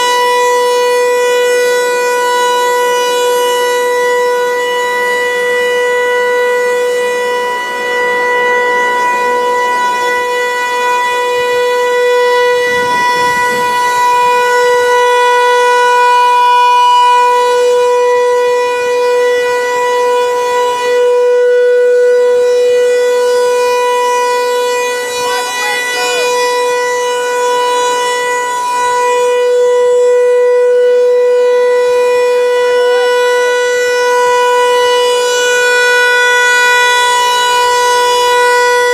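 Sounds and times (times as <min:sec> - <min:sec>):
steady warning siren: 0:00.0 - 0:38.9.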